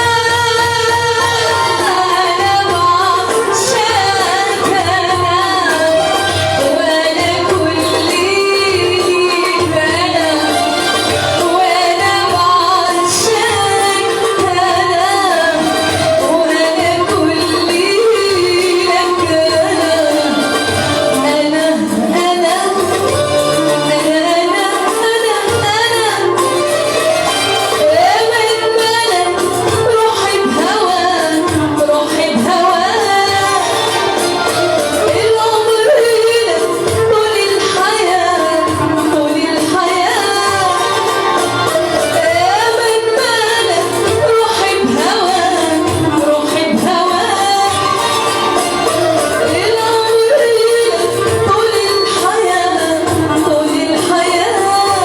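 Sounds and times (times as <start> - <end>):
instrumental accompaniment: 0.0 - 55.0
woman singing: 0.0 - 55.0
instrumental accompaniment with low beat: 22.8 - 35.4.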